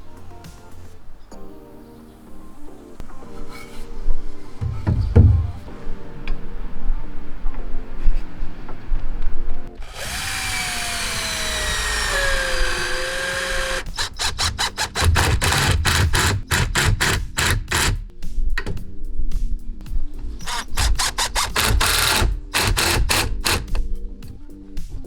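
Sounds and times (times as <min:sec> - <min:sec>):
drill clutch clicking: 0:09.8 - 0:18.0, 0:20.4 - 0:23.8
drill-driver driving into wood: 0:09.8 - 0:18.0, 0:20.4 - 0:23.8.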